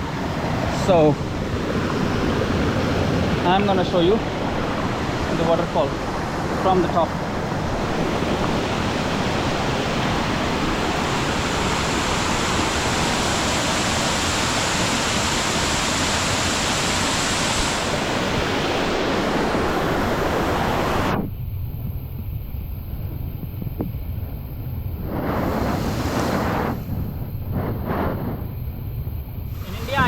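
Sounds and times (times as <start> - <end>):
waterfall rushing: 29.5 - 30.0.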